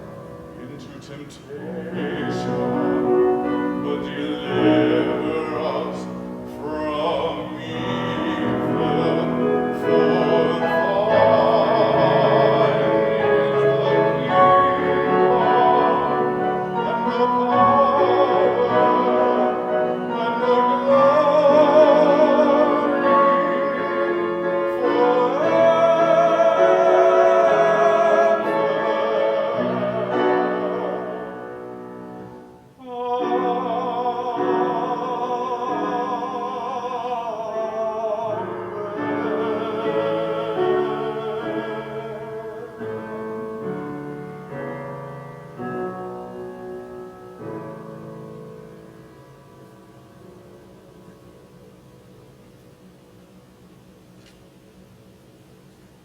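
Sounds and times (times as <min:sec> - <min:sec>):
piano accompaniment: 0:00.0 - 0:56.0
person singing operatically: 0:00.6 - 0:31.7, 0:32.7 - 0:43.5.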